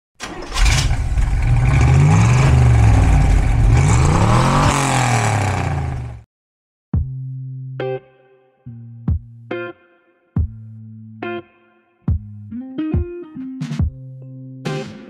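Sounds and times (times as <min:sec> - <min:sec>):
car engine revving: 0:00.2 - 0:06.2.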